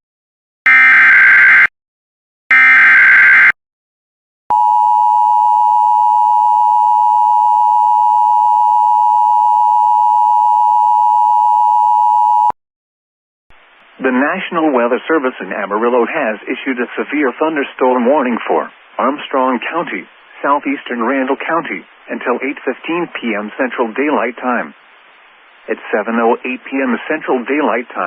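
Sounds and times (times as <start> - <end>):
two-tone attention signal: 4.5 - 12.6.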